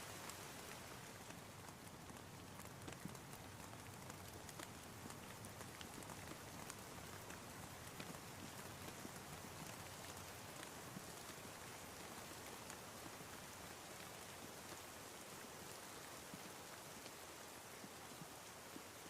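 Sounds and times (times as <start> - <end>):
raindrops pattering: 0.0 - 19.0
steady quiet rain: 0.0 - 19.0.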